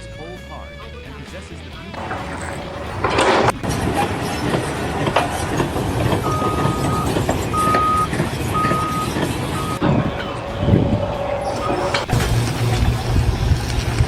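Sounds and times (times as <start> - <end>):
reversing alarm beeping: 2.0 - 13.2
heavy machinery running: 2.0 - 14.0
loud noisy burst: 2.0 - 14.0.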